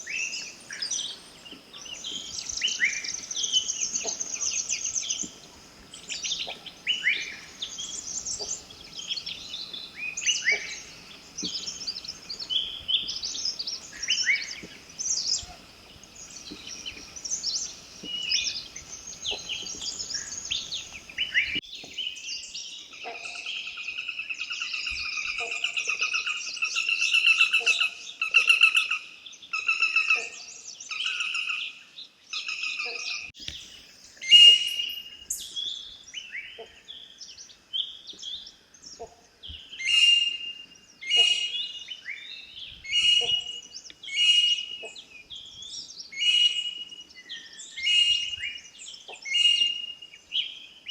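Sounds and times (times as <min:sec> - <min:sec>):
forest birds chirping: 0:00.0 - 0:50.9
bird trilling: 0:01.8 - 0:21.6.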